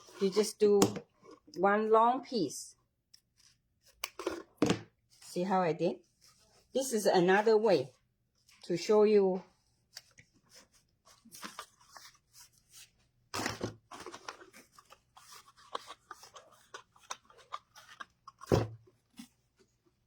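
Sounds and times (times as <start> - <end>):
ribbon crinkling and rustling: 13.9 - 19.6.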